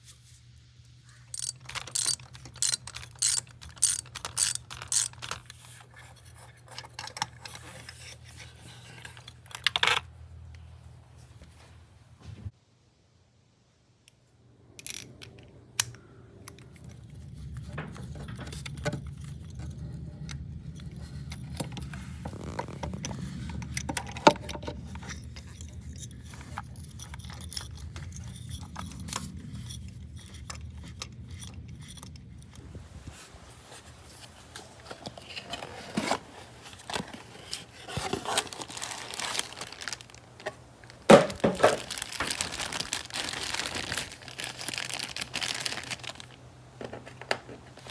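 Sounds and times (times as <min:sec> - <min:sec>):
low steady hum: 0:00.0 - 0:47.9
metal tools clinking and knocking: 0:01.3 - 0:10.0, 0:16.5 - 0:32.6.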